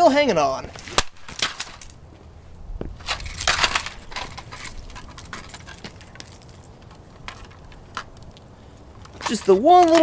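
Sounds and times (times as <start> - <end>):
broken parts rattling: 3.0 - 10.0.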